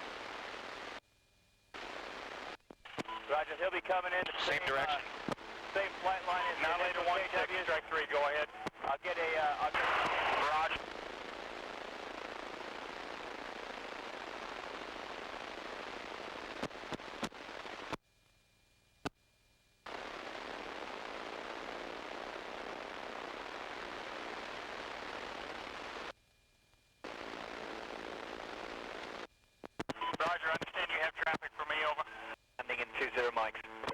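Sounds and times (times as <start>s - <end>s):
radio channel hiss: 0.0s - 1.0s, 1.8s - 18.0s, 19.9s - 26.1s, 27.0s - 33.9s
sharp radio clicks: 2.6s - 10.8s, 16.5s - 18.0s, 29.6s - 33.9s.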